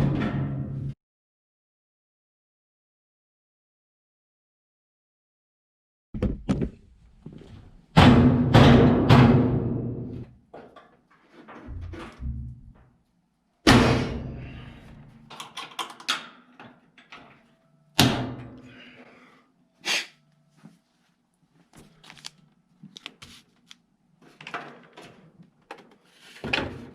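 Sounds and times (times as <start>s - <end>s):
heavy thunks on sheet metal: 7.9s - 10.2s, 13.7s - 14.8s, 18.0s - 18.6s.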